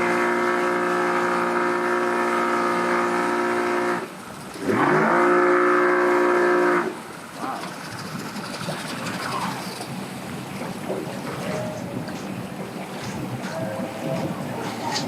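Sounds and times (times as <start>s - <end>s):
boat engine revving: 0.0s - 15.0s.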